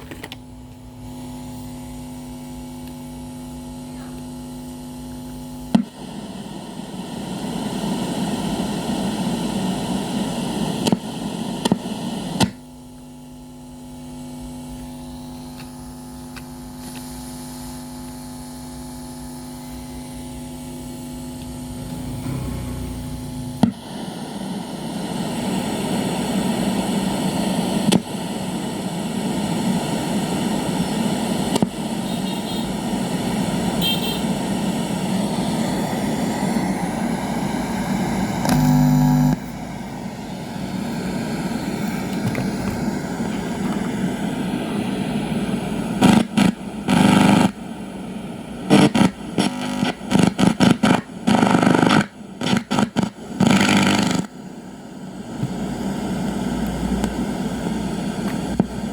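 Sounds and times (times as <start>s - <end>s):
mains hum: 0.0s - 58.9s
radio static: 19.3s - 54.4s.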